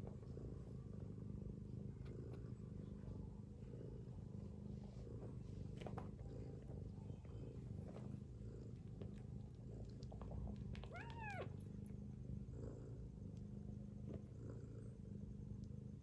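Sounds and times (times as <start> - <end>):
kitten mew: 10.9 - 11.5.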